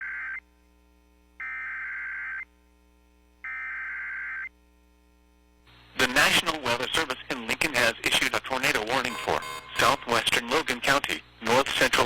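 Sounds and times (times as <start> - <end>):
high-pitched digital data tones: 9.0 - 10.4.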